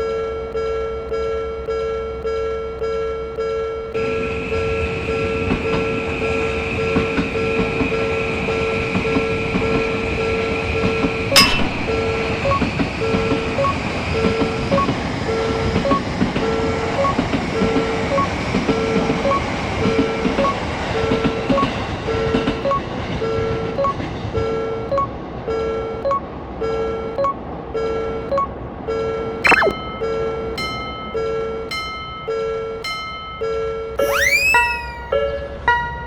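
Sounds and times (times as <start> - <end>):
sharp click: 11.4 - 12.0, 29.5 - 29.8
railroad crossing bell ringing: 11.4 - 12.5, 29.8 - 36.0.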